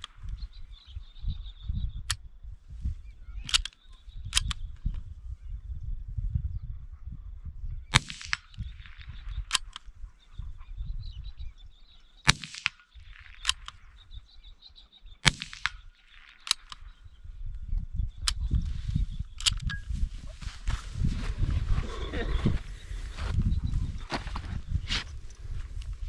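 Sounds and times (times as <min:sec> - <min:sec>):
wind noise on microphone: 0:00.0 - 0:14.6, 0:16.5 - 0:26.0
rifle shots: 0:07.9 - 0:09.0, 0:12.3 - 0:13.7, 0:15.2 - 0:16.9.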